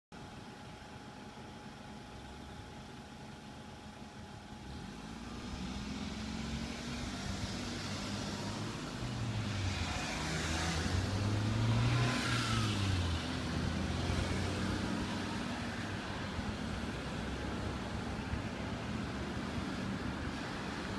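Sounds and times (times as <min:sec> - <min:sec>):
cars driving past: 0:04.6 - 0:20.9.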